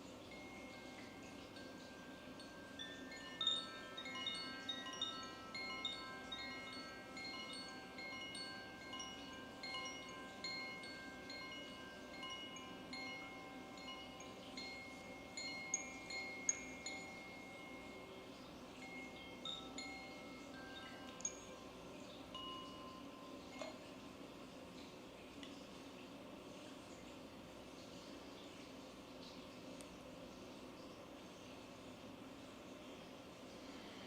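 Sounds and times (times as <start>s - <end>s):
wind chimes tinkling: 0.0s - 24.9s.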